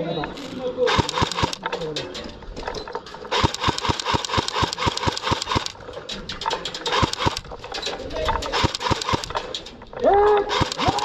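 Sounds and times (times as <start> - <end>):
airsoft guns firing: 0.9 - 1.8, 3.3 - 5.8, 6.9 - 7.5, 8.5 - 9.5, 10.5 - 11.0.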